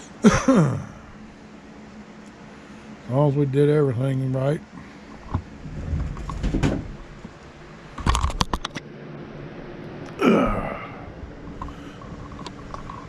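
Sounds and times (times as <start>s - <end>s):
person grunting: 0.2s - 1.1s, 10.2s - 11.1s
rustling and light knocks: 5.1s - 7.4s.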